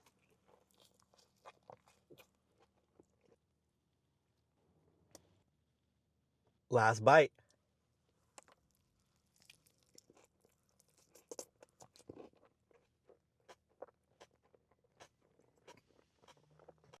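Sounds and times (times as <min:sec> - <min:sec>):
person chewing food: 0:00.0 - 0:03.4, 0:08.3 - 0:17.0.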